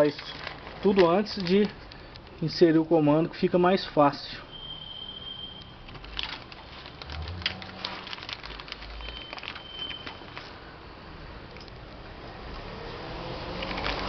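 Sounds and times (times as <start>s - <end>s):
rustling of handling: 0.0s - 2.6s, 5.8s - 10.6s.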